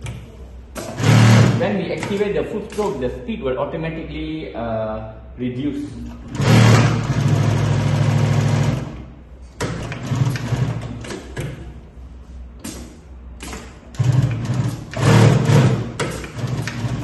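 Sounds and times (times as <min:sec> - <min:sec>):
sewing machine stitching: 0:00.8 - 0:02.2, 0:06.3 - 0:09.0, 0:09.6 - 0:11.2, 0:13.4 - 0:17.0.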